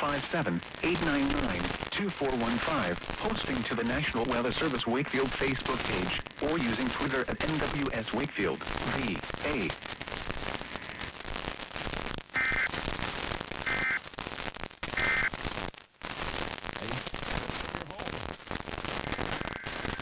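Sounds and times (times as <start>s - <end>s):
radio static hiss: 0.0s - 20.0s
short data tone bursts: 14.9s - 15.3s.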